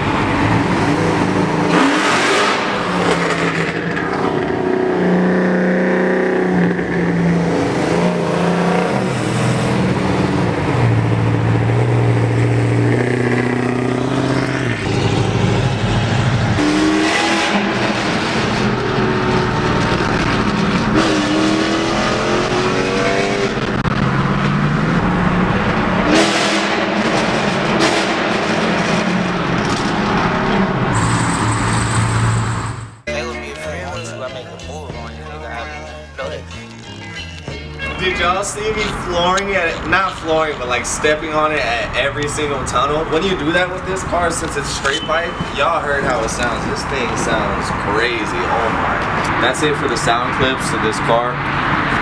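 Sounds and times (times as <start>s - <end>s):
car engine accelerating hard: 0.0s - 33.0s.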